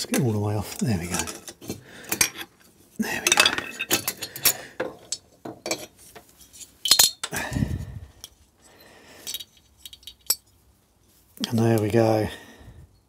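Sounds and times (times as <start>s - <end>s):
metal clinks of tools and parts: 0.1s - 7.4s, 8.2s - 10.6s.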